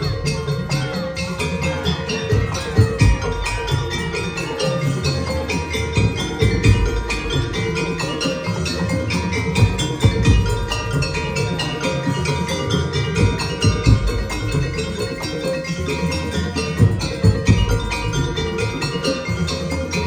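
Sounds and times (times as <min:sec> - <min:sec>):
ensemble music: 0:00.0 - 0:20.0
metallic mallet percussion: 0:00.0 - 0:20.0
drum hits: 0:02.3 - 0:04.7, 0:05.5 - 0:12.4, 0:13.0 - 0:15.3, 0:16.6 - 0:18.8.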